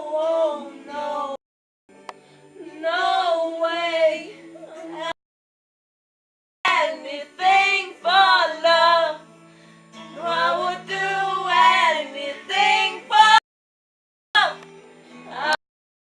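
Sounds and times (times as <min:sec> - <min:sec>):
girls singing: 0:00.0 - 0:01.4, 0:02.6 - 0:05.2, 0:06.7 - 0:09.2, 0:10.1 - 0:13.4, 0:15.3 - 0:15.6.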